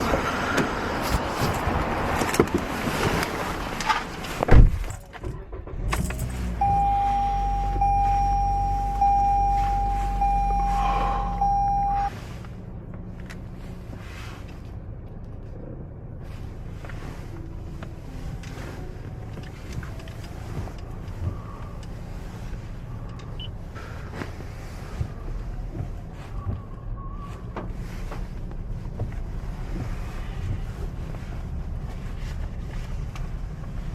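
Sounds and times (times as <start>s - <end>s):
car cabin noise: 0.0s - 33.9s
car door shutting: 3.8s - 4.9s
low hum: 5.4s - 14.0s
dashboard warning chime: 6.6s - 12.1s.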